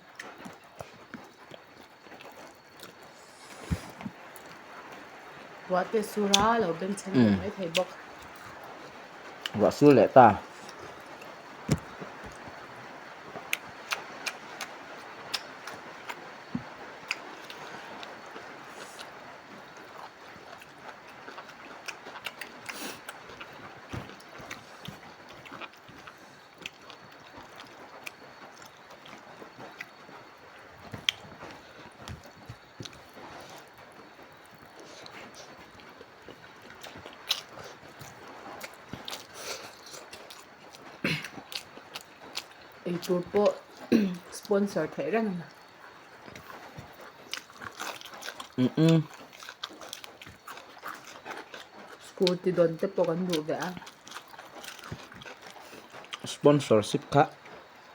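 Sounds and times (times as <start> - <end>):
background hiss: 0.0 - 57.9
eating clicks and crunches: 0.0 - 57.9
person chewing food: 0.1 - 44.3, 45.5 - 56.3.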